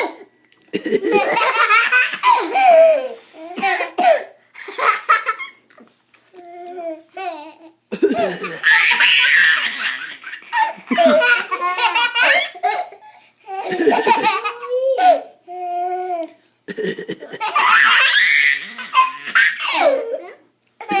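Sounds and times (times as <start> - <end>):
hearty belly laughter: 8.0 - 13.0.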